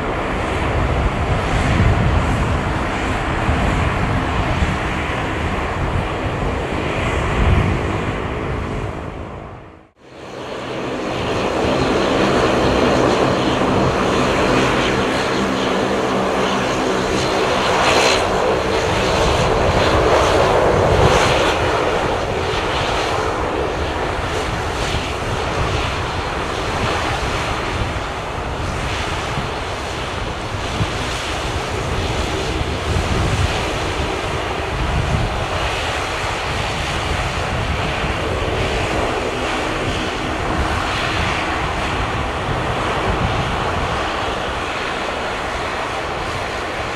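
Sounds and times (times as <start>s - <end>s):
jet engines running: 0.0s - 46.9s.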